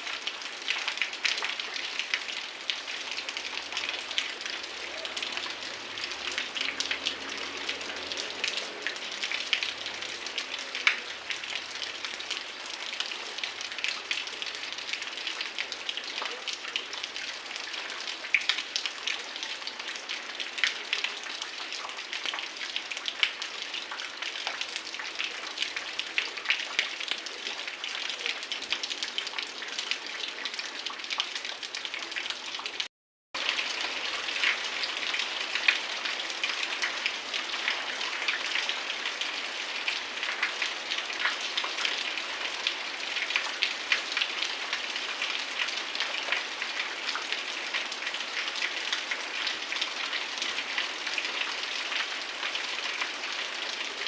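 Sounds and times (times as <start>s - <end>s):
heavy rain falling: 0.0s - 15.5s, 33.4s - 54.0s.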